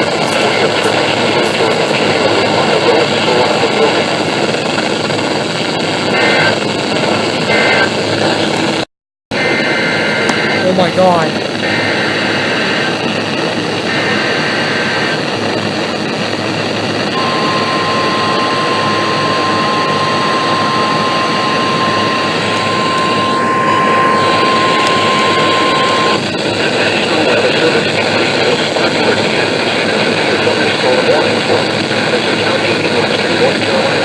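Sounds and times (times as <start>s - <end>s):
data burst tones: 0.0s - 4.6s, 17.1s - 26.2s
steady warning alarm tone: 0.0s - 5.0s, 9.3s - 13.1s, 13.8s - 15.2s, 17.1s - 26.3s.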